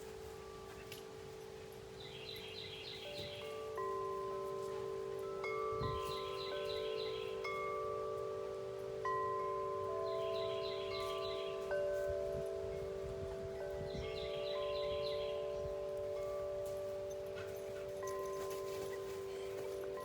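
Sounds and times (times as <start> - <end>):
wind chimes ringing: 0.0 - 20.0.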